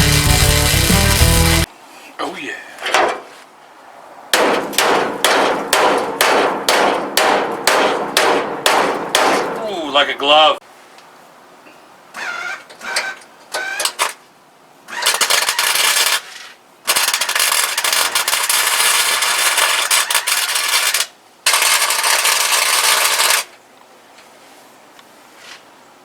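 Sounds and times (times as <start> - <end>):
welding arc crackling: 0.0 - 1.7.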